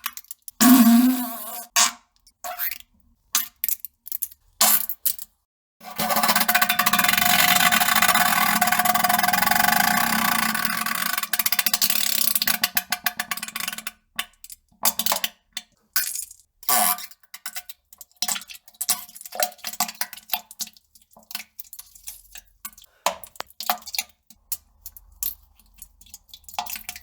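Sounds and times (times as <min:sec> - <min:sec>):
farting: 0:00.6 - 0:01.6.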